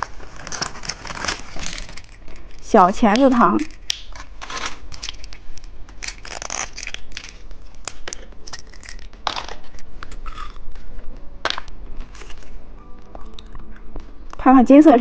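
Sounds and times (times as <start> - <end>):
candy wrapper crinkling: 0.0 - 10.9
wrapper snaps: 0.0 - 12.5.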